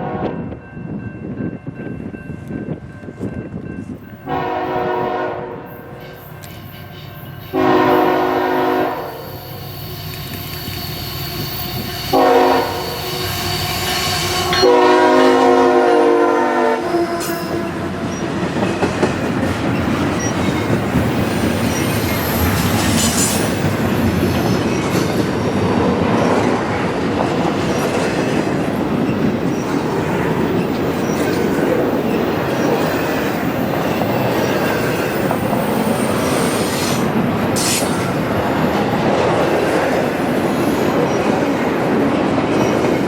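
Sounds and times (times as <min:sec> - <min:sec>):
locomotive horn: 0:04.3 - 0:06.0, 0:07.5 - 0:18.2
train wheels clattering on rails: 0:17.1 - 0:43.0.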